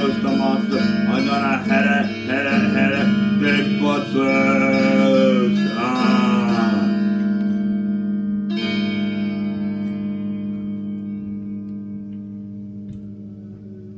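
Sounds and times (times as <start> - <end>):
person singing: 0.0 - 7.1
strummed acoustic guitar: 0.0 - 11.5.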